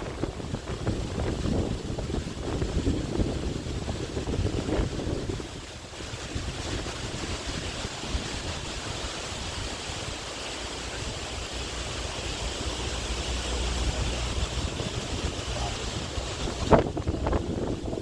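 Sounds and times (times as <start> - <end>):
driving rain hiss: 0.0 - 18.0
wind buffeting microphone: 0.0 - 18.0.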